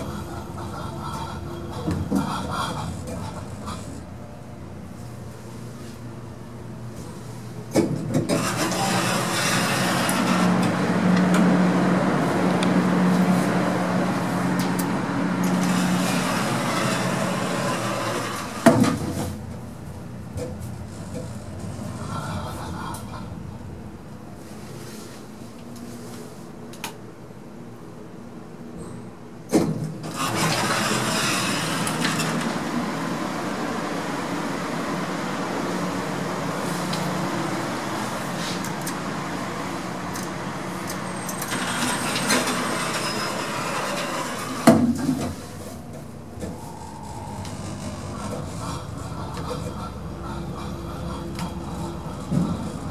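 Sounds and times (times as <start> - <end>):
lift running with low hum: 0.0 - 52.9
mechanical rumble: 30.0 - 52.9.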